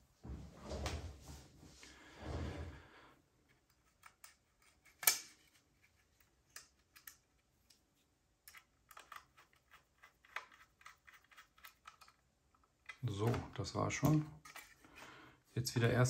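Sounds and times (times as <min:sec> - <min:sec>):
screwdriver and screws clicking: 0:08.4 - 0:13.4.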